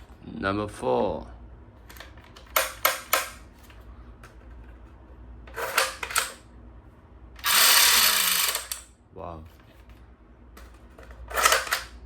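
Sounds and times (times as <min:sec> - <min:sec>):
toy gun plastic clicks: 0:07.4 - 0:08.9.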